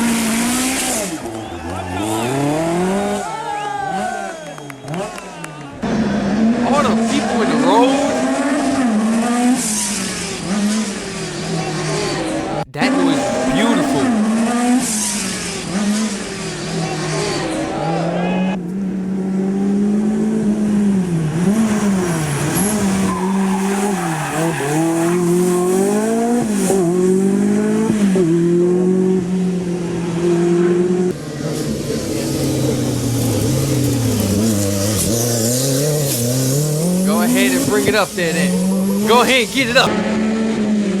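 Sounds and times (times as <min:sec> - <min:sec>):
rally car engine revving: 0:00.0 - 0:03.2, 0:13.4 - 0:37.7.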